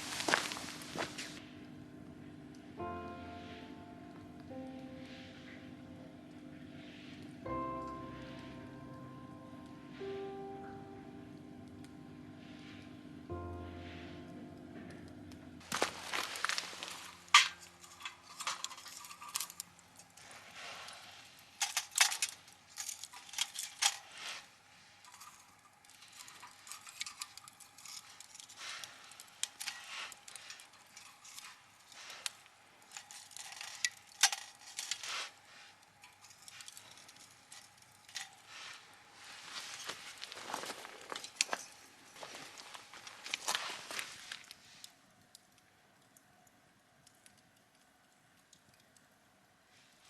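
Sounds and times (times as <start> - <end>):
faint steady hum: 0.0 - 50.0
small hard objects clinking: 15.6 - 44.4.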